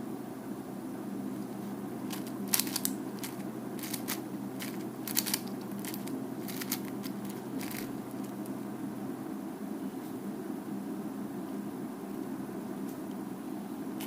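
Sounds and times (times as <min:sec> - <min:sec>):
low background hum: 0:00.0 - 0:14.0
puzzle cube clicking: 0:02.1 - 0:08.4.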